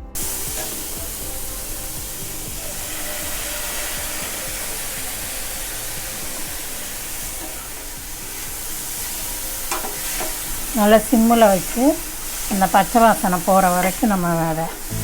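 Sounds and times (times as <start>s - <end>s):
vegetables sizzling in a pan: 0.0s - 15.0s.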